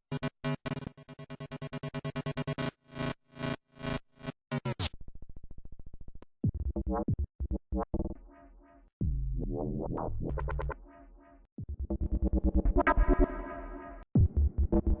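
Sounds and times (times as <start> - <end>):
wobbling bass: 9.0 - 10.8
swooping bass notes: 9.0 - 11.0.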